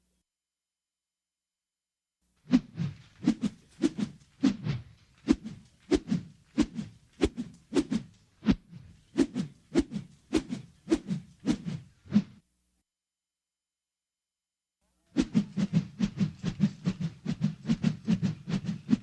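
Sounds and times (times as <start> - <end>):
rope whooshing: 2.5 - 12.4, 15.1 - 19.0.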